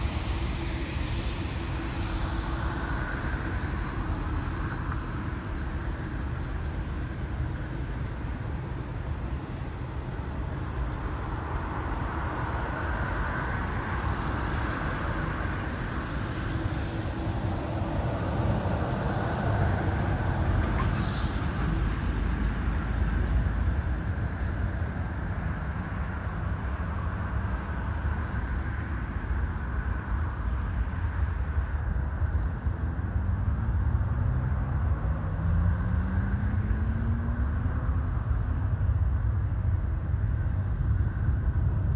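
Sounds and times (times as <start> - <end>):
jet engines rumbling: 0.0 - 30.6.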